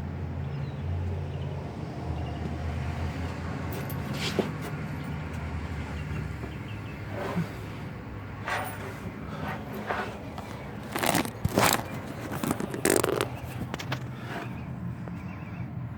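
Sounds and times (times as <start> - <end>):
truck engine humming: 5.0 - 15.9
harsh grinding noises: 6.7 - 14.8.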